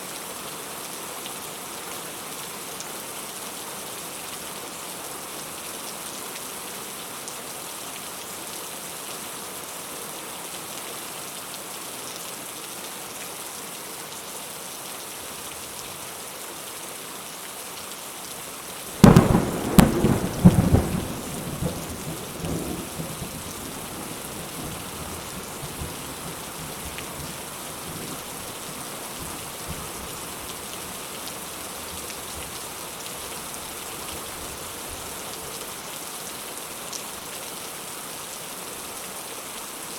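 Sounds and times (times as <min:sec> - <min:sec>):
steady rain hiss: 0:00.0 - 0:39.9
thunderclap rumbling: 0:19.0 - 0:26.0.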